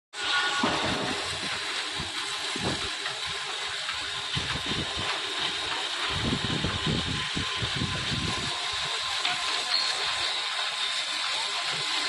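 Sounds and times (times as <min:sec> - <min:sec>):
concrete-cutting machine running: 0:00.2 - 0:12.0.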